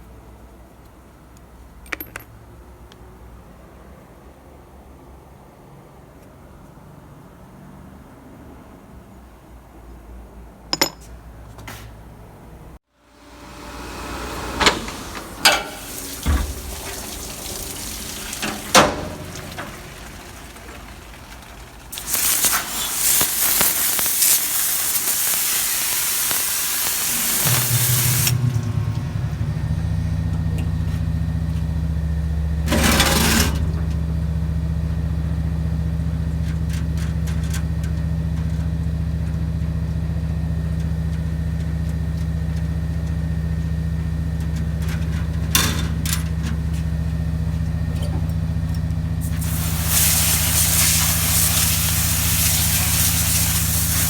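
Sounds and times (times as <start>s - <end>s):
metal parts clinking: 1.9s - 2.3s
loud rushing hiss: 13.0s - 19.8s, 21.9s - 32.0s, 49.2s - 54.0s
electric motor humming: 13.2s - 19.8s, 23.4s - 34.0s
short hiss: 21.9s - 30.0s, 49.2s - 54.0s.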